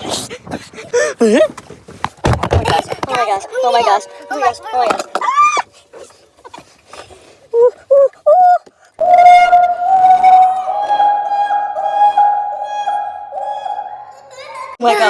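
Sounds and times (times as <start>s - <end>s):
child howling and yelping: 5.1s - 5.7s, 7.5s - 12.0s, 13.2s - 15.0s.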